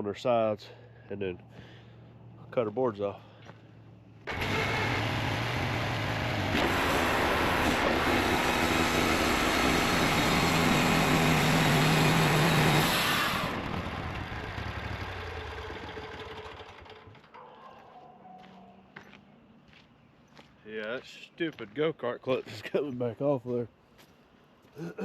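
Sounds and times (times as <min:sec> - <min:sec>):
sawmill engine running: 0:04.3 - 0:17.3.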